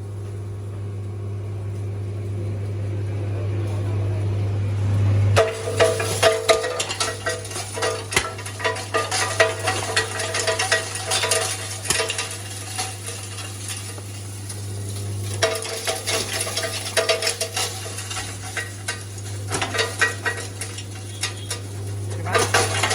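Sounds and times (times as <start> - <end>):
electric motor hum: 0.0 - 22.9
salt granules rattling: 5.4 - 22.9.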